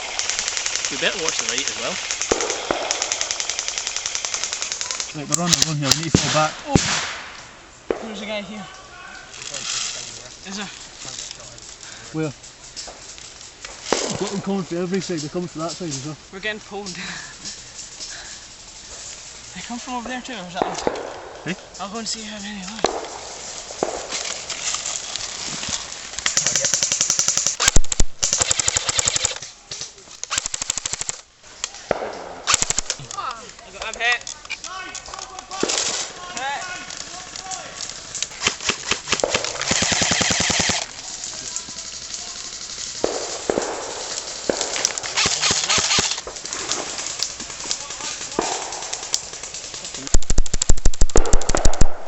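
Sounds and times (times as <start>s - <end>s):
airsoft guns firing full-auto: 0.0s - 7.3s, 20.6s - 21.5s, 22.8s - 24.5s, 26.3s - 29.4s, 30.3s - 31.2s, 31.9s - 33.0s, 38.3s - 52.0s
loud single cracks: 0.0s - 8.2s, 22.8s - 24.9s, 26.2s - 33.2s, 33.8s - 41.6s, 43.0s - 52.0s
rustling: 0.0s - 52.0s.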